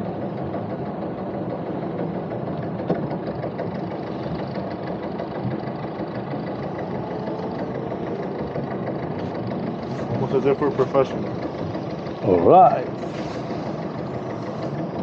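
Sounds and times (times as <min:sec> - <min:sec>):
boat engine running: 0:00.0 - 0:15.0.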